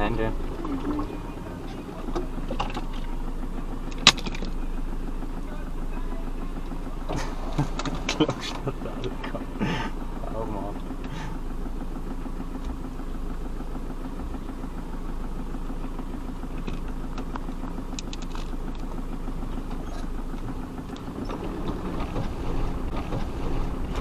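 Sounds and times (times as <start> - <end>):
vehicle engine at low revs: 0.0 - 24.0
light clicks and rattles: 16.5 - 18.9.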